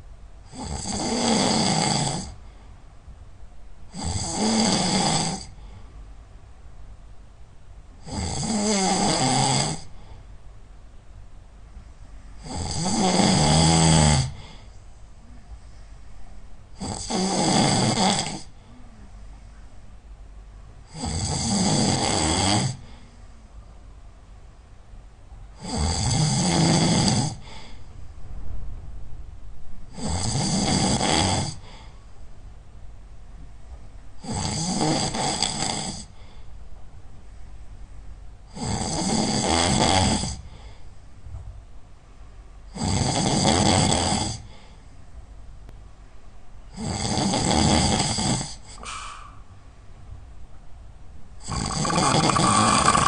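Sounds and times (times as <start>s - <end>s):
person snoring loudly: 0.5s - 2.4s, 3.9s - 5.6s, 8.0s - 9.9s, 12.4s - 14.5s, 16.8s - 18.6s, 20.9s - 22.8s, 25.6s - 27.4s, 29.9s - 31.6s, 34.2s - 36.1s, 38.5s - 40.4s, 42.7s - 44.5s, 46.7s - 48.9s, 51.4s - 53.0s
quiet breathing: 2.2s - 3.2s, 5.3s - 6.2s, 9.8s - 10.6s, 11.6s - 12.6s, 14.2s - 17.2s, 18.2s - 20.1s, 22.7s - 23.9s, 27.3s - 28.4s, 31.4s - 32.4s, 35.8s - 37.8s, 40.3s - 41.3s, 44.2s - 45.2s, 48.0s - 49.6s.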